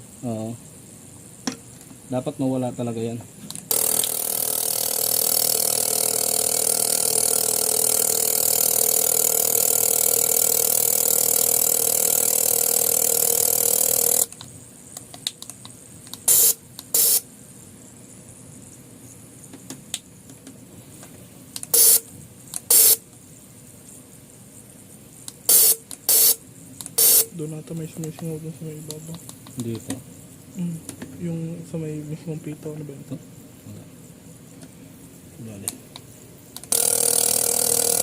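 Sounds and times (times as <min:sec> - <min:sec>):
machine whine: 0:01.4 - 0:14.4, 0:35.4 - 0:38.0
injectors spraying hiss: 0:01.5 - 0:17.3, 0:20.8 - 0:24.0, 0:24.8 - 0:33.9.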